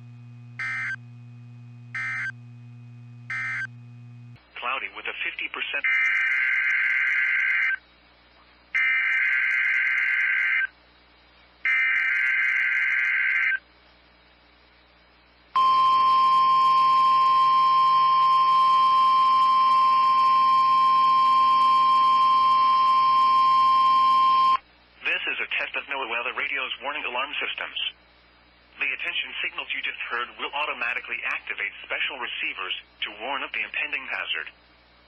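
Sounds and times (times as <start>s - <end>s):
steady alarm tone: 0.0s - 4.4s, 15.6s - 24.6s.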